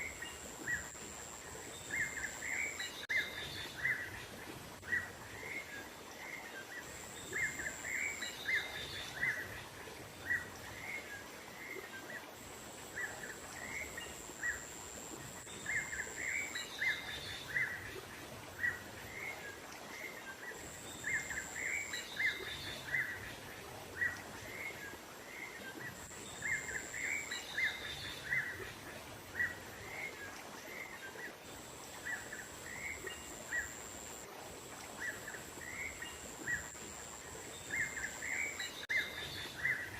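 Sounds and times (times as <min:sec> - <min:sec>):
faint background hiss: 0:00.0 - 0:39.9.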